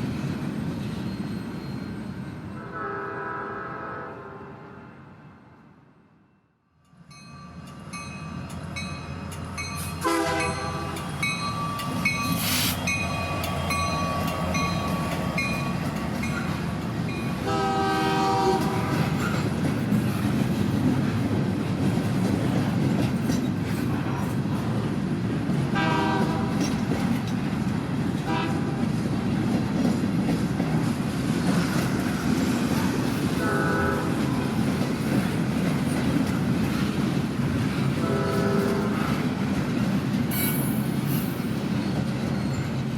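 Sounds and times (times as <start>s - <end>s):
steam whistle blasts: 2.6s - 4.6s, 10.0s - 11.0s, 38.0s - 39.0s
train wheels rumbling: 7.1s - 42.9s.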